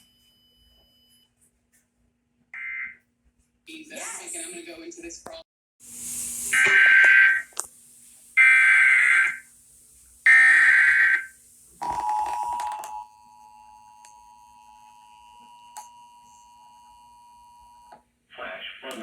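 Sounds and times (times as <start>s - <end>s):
digital data bursts: 6.5s - 7.5s
two-tone attention signal: 6.5s - 7.5s.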